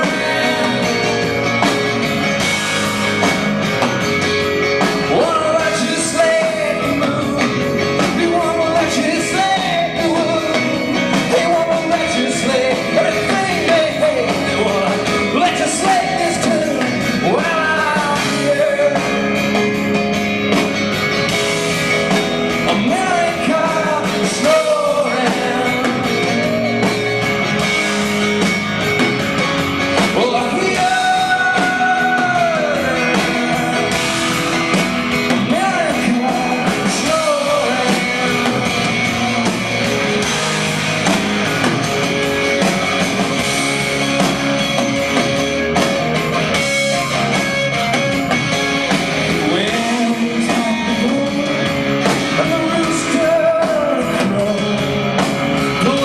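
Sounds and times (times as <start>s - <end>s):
person singing: 0.0s - 1.4s, 4.8s - 19.6s, 22.5s - 27.2s, 30.0s - 40.1s, 49.3s - 56.0s
electric guitars: 0.0s - 56.0s.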